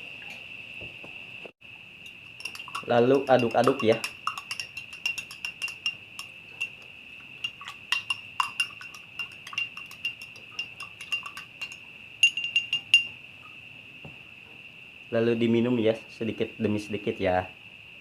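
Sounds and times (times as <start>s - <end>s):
high insect trill: 0.0s - 18.0s
spoon clinking in a glass: 2.0s - 13.2s.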